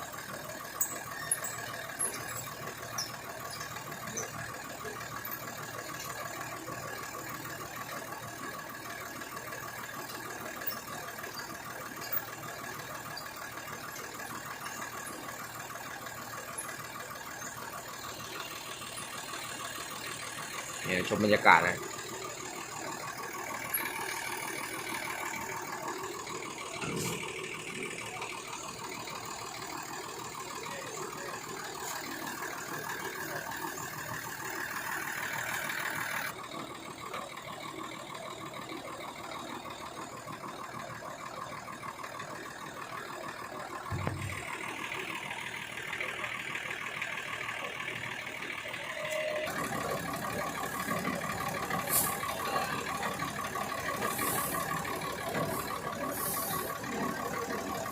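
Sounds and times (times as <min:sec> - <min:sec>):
threshing machine drone: 0:49.5 - 0:57.9.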